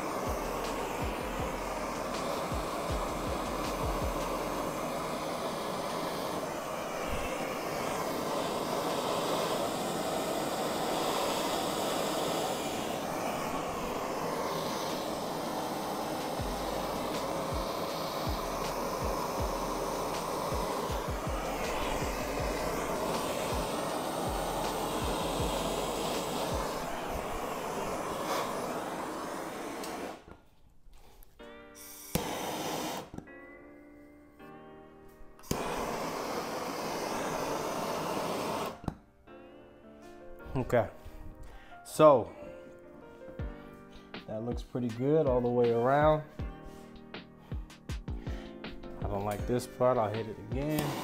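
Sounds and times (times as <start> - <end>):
torch flame hissing: 0.0 - 33.2, 35.4 - 39.0, 47.5 - 51.0.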